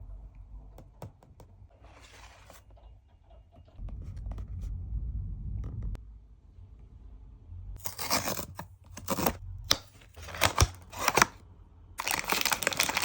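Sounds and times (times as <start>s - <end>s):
packaging rustling: 7.8s - 11.4s, 12.0s - 13.0s
packaging tearing: 7.8s - 11.4s, 12.0s - 13.0s.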